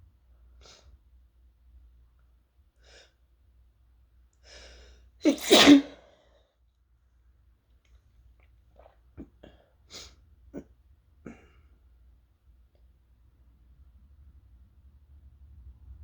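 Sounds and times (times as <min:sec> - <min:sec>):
person sneezing: 0:05.2 - 0:06.2.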